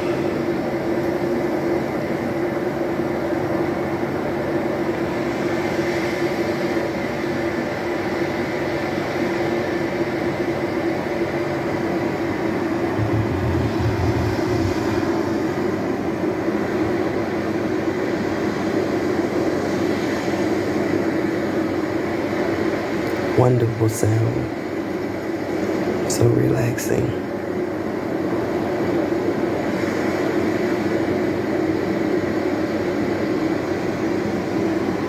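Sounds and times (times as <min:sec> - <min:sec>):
electric fan humming: 0:11.6 - 0:17.2
ocean waves whooshing: 0:12.4 - 0:17.4
low rumble: 0:12.8 - 0:16.5.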